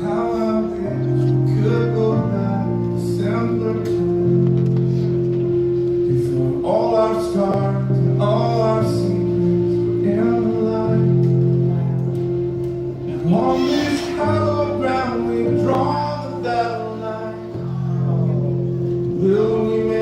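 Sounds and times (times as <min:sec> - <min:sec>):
guitar: 0:00.0 - 0:20.0
steady held note: 0:13.2 - 0:15.5
person singing: 0:13.2 - 0:17.5.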